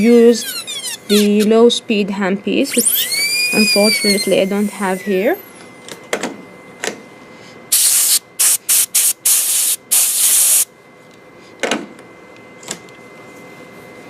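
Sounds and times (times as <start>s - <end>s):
compressed air hissing: 7.7s - 10.7s.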